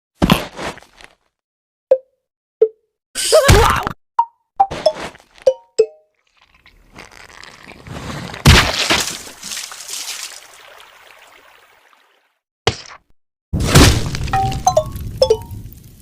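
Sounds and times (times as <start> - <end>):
glass breaking crash: 13.6 - 15.5.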